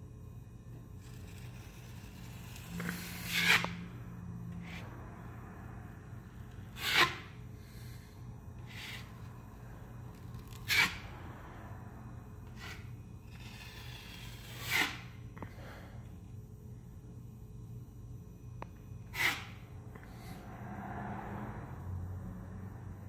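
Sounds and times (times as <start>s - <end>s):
steady low hum: 0.0s - 23.0s
drywall knife scraping compound: 1.0s - 3.8s, 6.7s - 7.3s, 8.6s - 9.1s, 10.1s - 11.0s, 12.5s - 15.1s, 19.1s - 19.6s.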